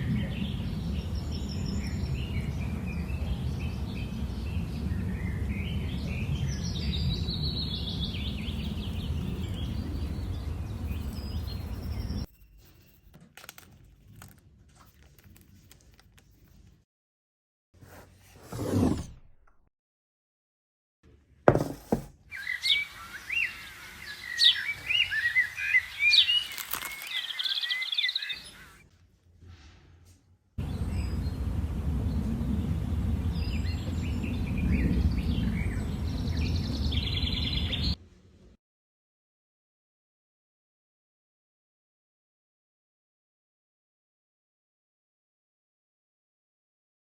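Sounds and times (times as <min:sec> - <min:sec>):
birds chirping: 0:05.4 - 0:12.3, 0:22.3 - 0:28.8
steady low rumble: 0:30.6 - 0:36.8.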